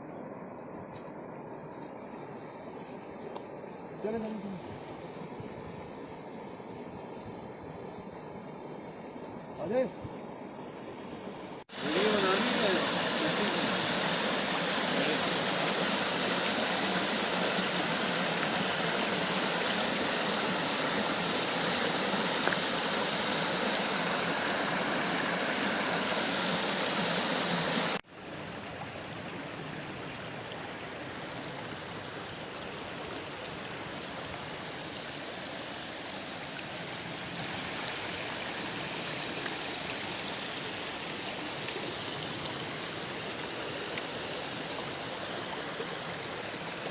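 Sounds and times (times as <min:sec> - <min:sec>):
waterfall rushing: 0:11.7 - 0:29.4.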